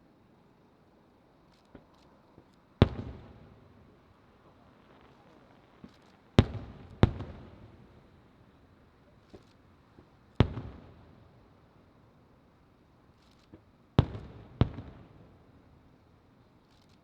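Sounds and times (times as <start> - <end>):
faint firework pops: 1.6 - 11.4, 13.2 - 15.8.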